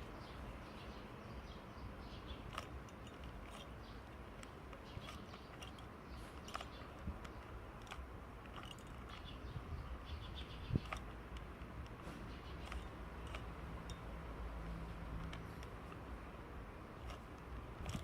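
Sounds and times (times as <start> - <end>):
puzzle cube clicking and rattling: 2.4 - 9.5, 16.9 - 18.0.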